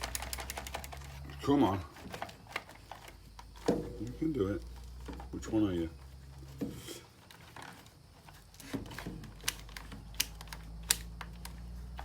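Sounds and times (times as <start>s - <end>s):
plastic connectors clicking: 0.0s - 1.2s, 8.5s - 12.0s.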